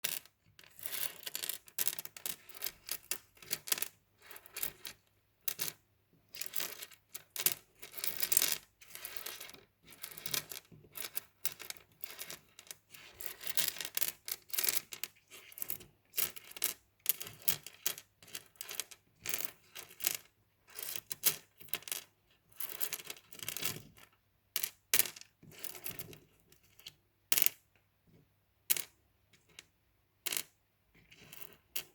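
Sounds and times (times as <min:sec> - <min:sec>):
mosaic tiles clinking and rattling: 0:00.0 - 0:05.8.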